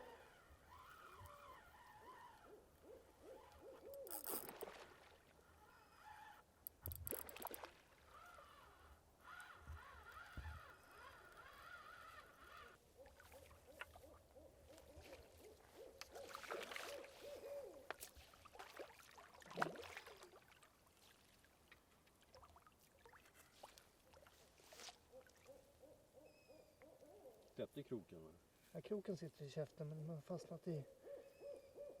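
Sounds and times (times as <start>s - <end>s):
faint wavering animal calls: 0.0s - 4.4s, 5.4s - 6.5s, 8.1s - 17.9s, 24.3s - 27.6s, 30.2s - 32.0s.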